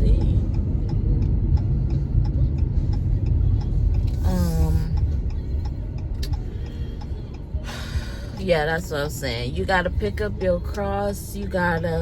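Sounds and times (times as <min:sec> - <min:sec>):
car road and engine rumble: 0:00.0 - 0:12.0
turn signal ticking: 0:00.0 - 0:12.0.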